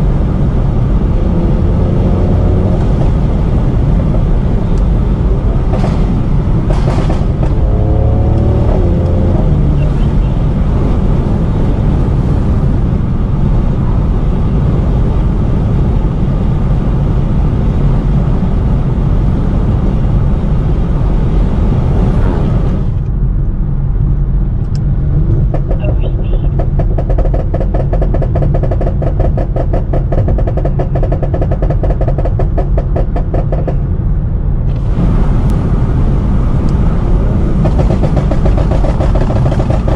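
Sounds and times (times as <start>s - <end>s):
car engine revving: 0.0s - 15.4s, 24.6s - 39.9s.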